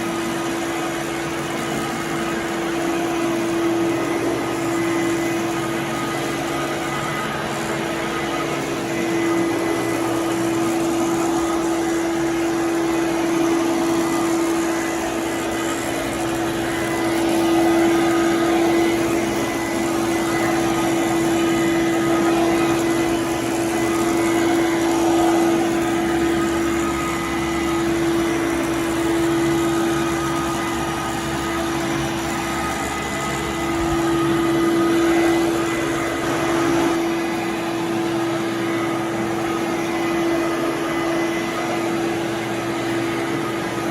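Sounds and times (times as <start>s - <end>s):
vacuum cleaner running: 0.0s - 43.9s.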